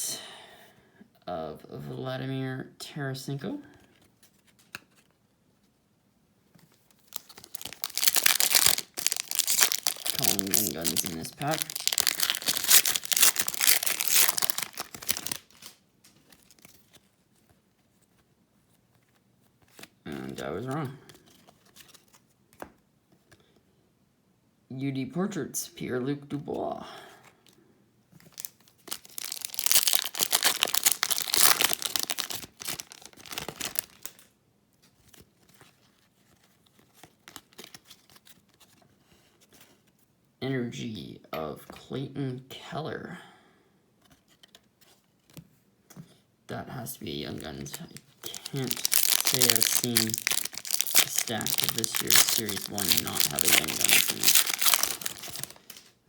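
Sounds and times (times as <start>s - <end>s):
cards rustling and clicking: 3.9s - 5.2s, 6.6s - 18.2s, 18.9s - 23.4s, 28.2s - 38.8s, 47.3s - 55.9s
foil wrapper tearing and crinkling: 7.0s - 16.8s, 28.3s - 34.3s, 47.7s - 55.9s.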